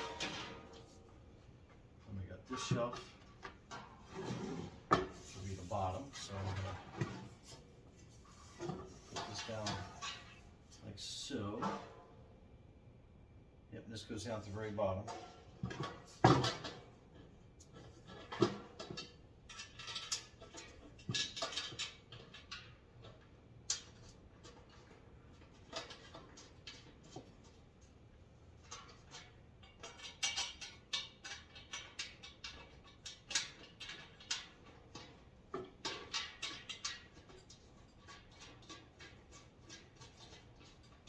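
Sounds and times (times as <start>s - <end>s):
tool rack parts clicking and knocking: 0.0s - 1.0s, 8.5s - 10.4s, 15.0s - 27.9s, 28.5s - 41.0s.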